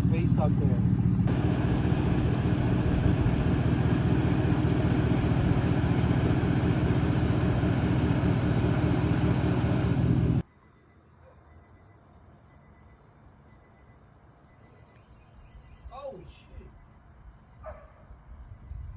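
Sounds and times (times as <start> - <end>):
vehicle engine idling: 0.0 - 10.4.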